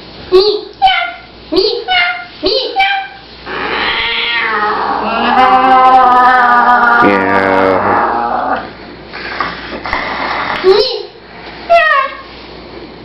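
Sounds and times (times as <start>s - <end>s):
child imitating cat meow: 1.9s - 8.7s, 11.7s - 12.3s.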